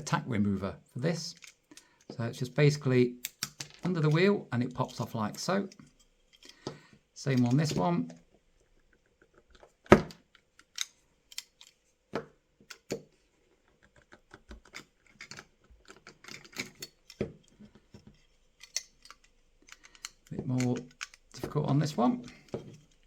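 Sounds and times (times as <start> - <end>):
small metal and plastic clicks: 1.3 - 2.1, 3.2 - 4.2, 5.7 - 11.8, 12.6 - 23.0.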